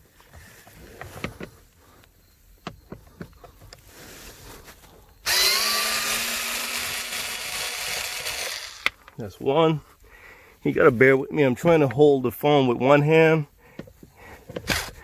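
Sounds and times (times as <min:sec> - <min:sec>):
power drill-driver running: 0:05.2 - 0:09.0.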